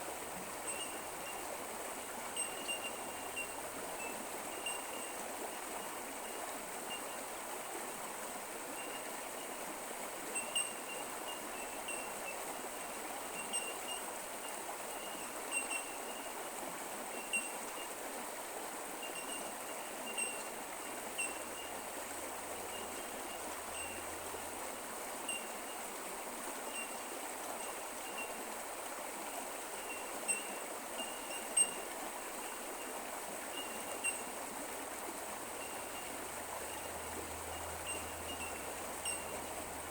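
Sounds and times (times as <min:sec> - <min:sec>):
creek running over rocks: 0:00.0 - 0:39.9.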